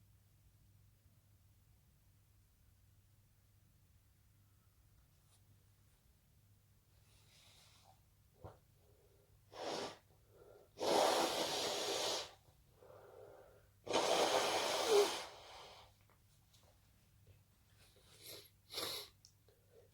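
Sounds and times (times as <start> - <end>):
quiet breaths: 6.8 - 19.9
person blowing nose: 9.5 - 10.0, 10.8 - 12.4, 13.8 - 15.8, 18.2 - 19.1.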